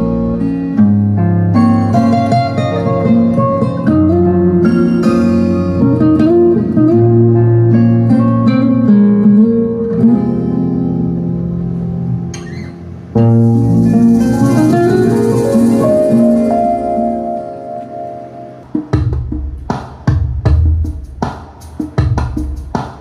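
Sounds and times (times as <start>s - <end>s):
plucked guitar notes: 0.0s - 18.8s
held chords: 0.0s - 19.8s
steady hiss: 11.2s - 18.8s.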